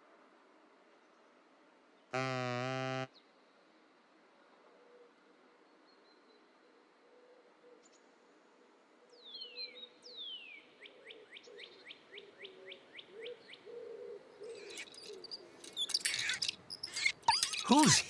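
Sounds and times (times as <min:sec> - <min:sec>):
sharp chirps and clicks: 0:14.6 - 0:18.0
bird-like whistled calls: 0:15.8 - 0:18.0
short downward chirps: 0:15.9 - 0:18.0.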